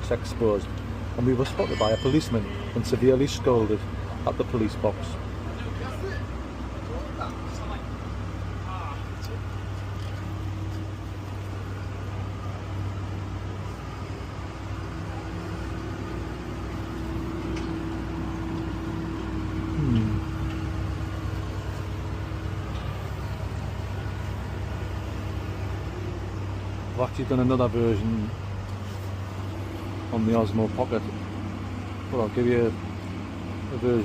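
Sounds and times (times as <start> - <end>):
urban background hum: 0.0 - 34.0.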